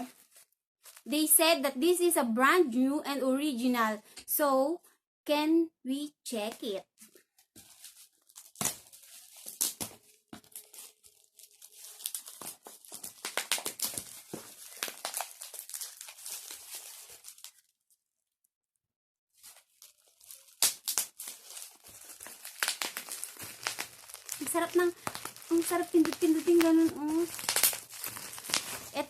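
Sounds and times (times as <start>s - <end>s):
plastic packaging crinkling: 0.0s - 1.1s, 7.0s - 17.9s, 19.4s - 29.0s.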